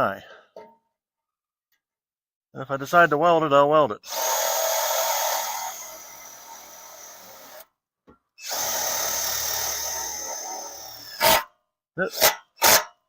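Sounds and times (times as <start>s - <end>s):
power drill driving screw into metal: 4.1s - 7.7s, 8.4s - 11.5s, 12.2s - 13.0s.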